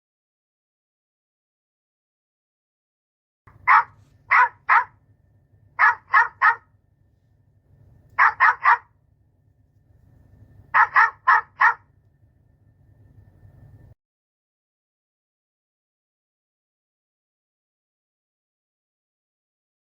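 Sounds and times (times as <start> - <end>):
dog barking: 3.5 - 5.0, 5.8 - 6.7, 8.2 - 9.0, 10.7 - 11.9
faint low hum: 3.5 - 14.0.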